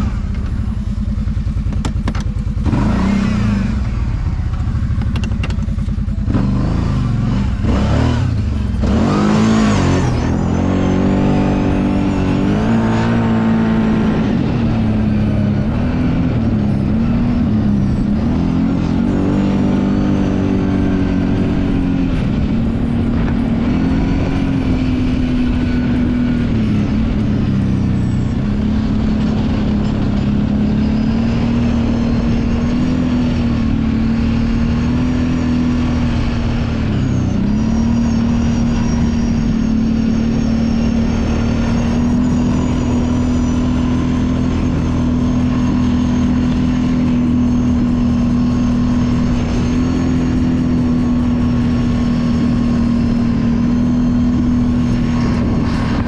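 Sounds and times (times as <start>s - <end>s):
atv engine running under load: 0.0s - 56.0s.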